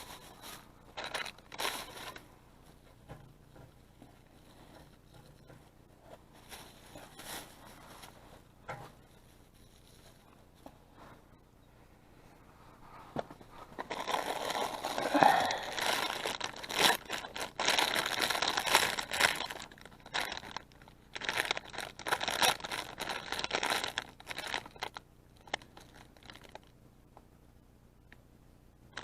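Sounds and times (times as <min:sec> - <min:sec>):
packaging crinkling and rustling: 0:00.0 - 0:03.0, 0:06.1 - 0:10.7, 0:13.2 - 0:26.7.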